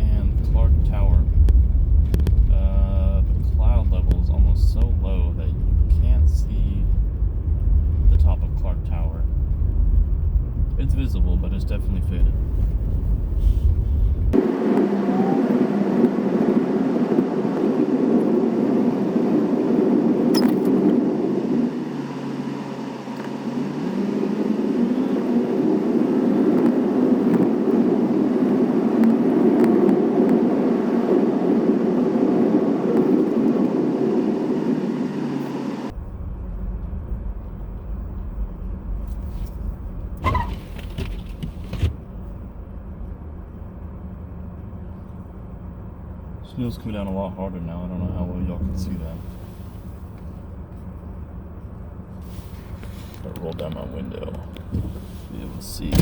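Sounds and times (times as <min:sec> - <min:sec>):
car road and engine noise: 0:00.0 - 0:56.0
deep rumble: 0:00.0 - 0:56.0.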